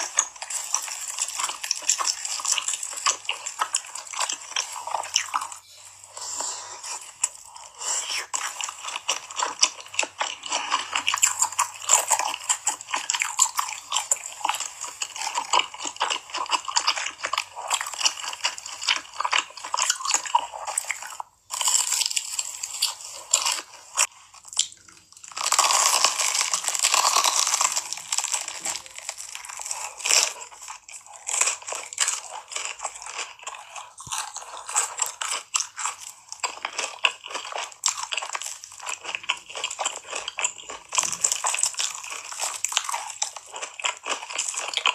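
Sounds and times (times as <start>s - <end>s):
crunching and chewing food: 0.0s - 44.9s.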